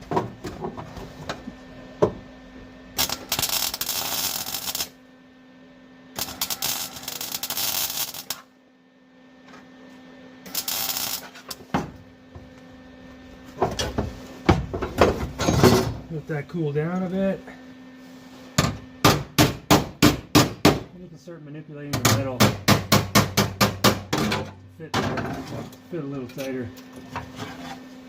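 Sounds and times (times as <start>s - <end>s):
faint steady hum: 0.0s - 28.0s
welding arc crackling: 2.9s - 5.0s, 6.2s - 8.5s, 10.4s - 11.6s.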